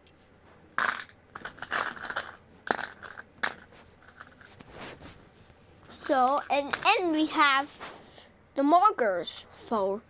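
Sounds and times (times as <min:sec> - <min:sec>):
crinkling and rustling of small parts: 0:00.8 - 0:08.0.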